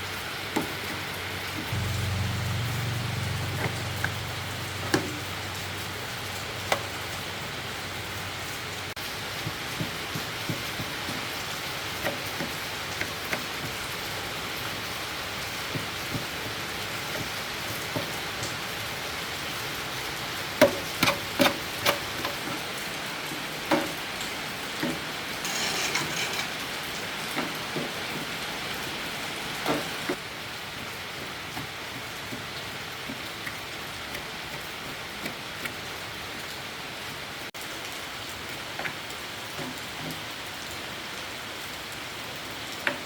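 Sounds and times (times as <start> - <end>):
steady rain falling: 0.0 - 43.0
rasping noise: 25.4 - 27.0.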